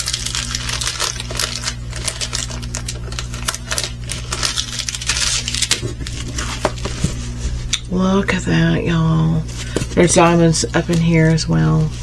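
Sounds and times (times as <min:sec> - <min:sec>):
plastic packaging crinkling and clicking: 0:00.0 - 0:07.2
steady low hum: 0:00.0 - 0:12.0.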